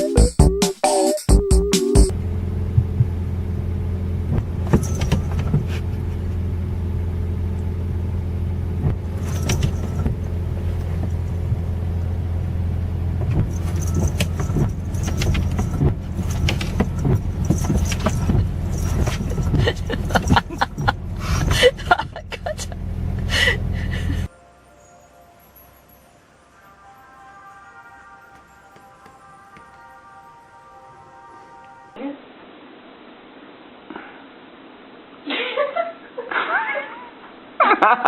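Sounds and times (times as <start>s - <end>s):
vehicle rumble: 2.1s - 24.3s
clicks and light jingling: 4.8s - 5.5s, 9.2s - 11.2s, 13.4s - 21.6s.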